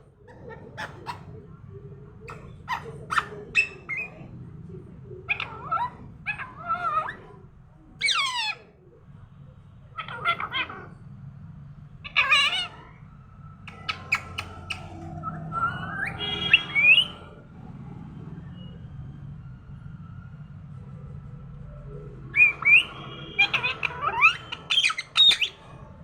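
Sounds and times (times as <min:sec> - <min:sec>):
parrot squawking and whistling: 0:02.3 - 0:04.2, 0:05.3 - 0:07.3, 0:08.0 - 0:08.6, 0:12.1 - 0:12.8, 0:13.7 - 0:17.3, 0:22.3 - 0:25.6.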